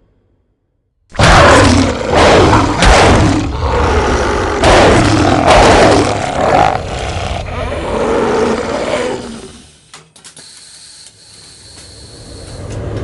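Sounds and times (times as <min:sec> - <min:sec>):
beast roaring and growling: 0:01.1 - 0:09.7.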